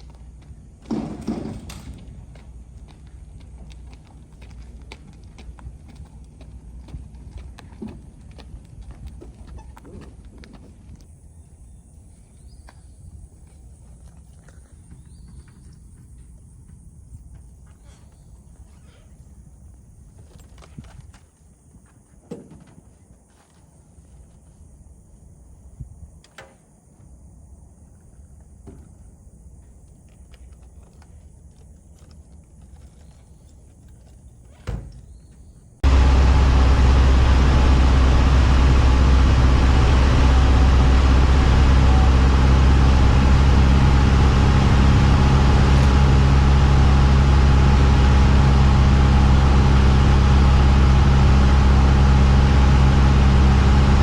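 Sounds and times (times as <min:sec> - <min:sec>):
aircraft piston engine drone: 0:35.8 - 0:54.0.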